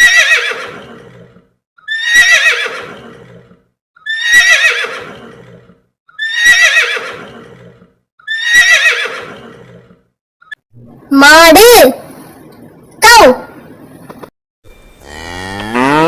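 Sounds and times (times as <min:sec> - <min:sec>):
horse whinnying: 0:00.0 - 0:10.0.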